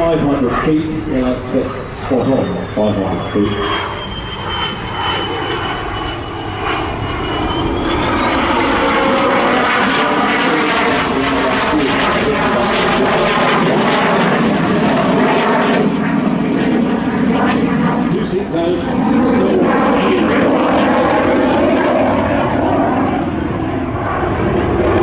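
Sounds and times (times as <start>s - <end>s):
high whine: 0.0s - 16.0s
jet engine roar: 0.0s - 25.0s.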